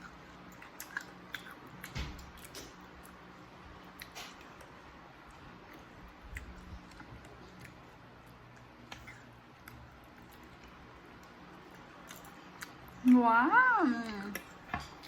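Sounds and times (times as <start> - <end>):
quiet chewing: 0.0 - 13.2, 14.0 - 15.0
low steady hum: 0.0 - 15.0.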